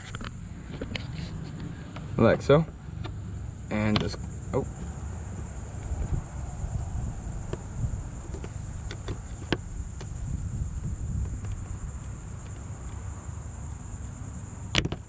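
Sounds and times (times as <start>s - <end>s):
low handling rumble: 0.0s - 14.8s
crickets chirping: 0.0s - 15.0s.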